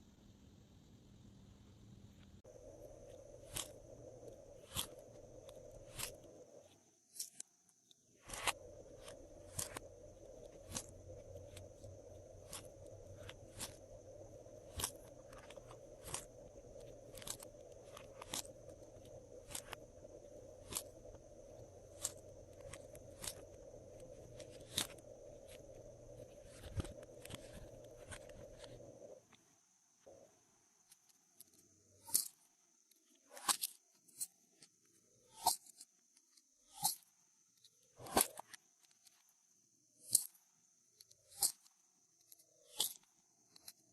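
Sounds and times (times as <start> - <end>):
faint steady hum: 0.0 - 33.0.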